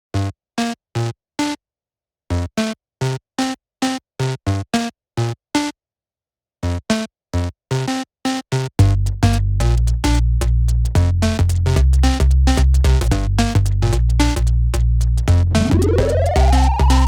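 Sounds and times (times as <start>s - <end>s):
clipped synthesizer notes: 15.3s - 17.0s.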